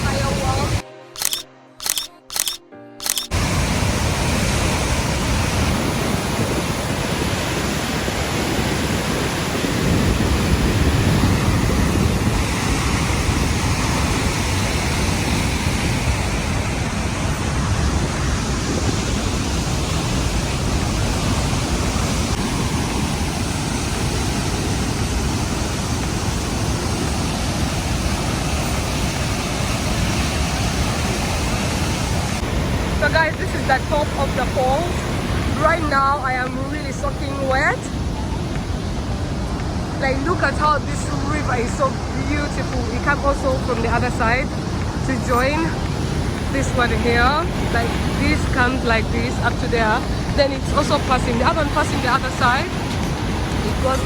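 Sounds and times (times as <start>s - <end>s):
rush of falling water: 0.0s - 0.8s, 2.4s - 54.0s.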